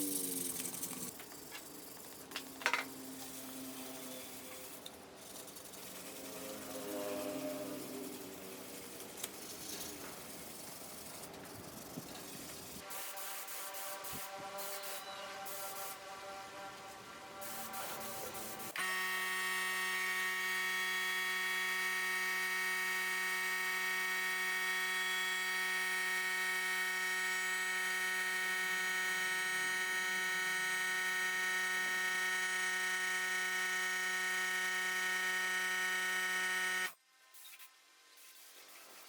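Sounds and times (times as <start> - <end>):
power tool motor whine: 17.5 - 37.0.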